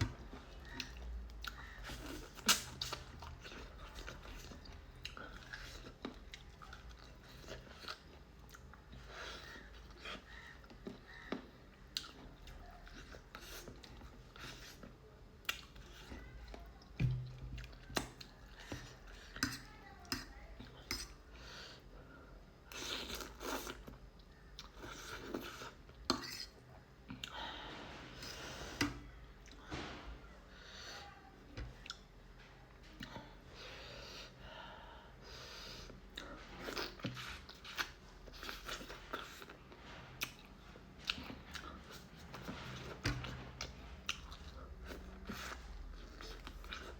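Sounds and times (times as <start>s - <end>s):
person chewing: 0.0s - 19.6s, 22.7s - 27.4s, 35.8s - 46.9s.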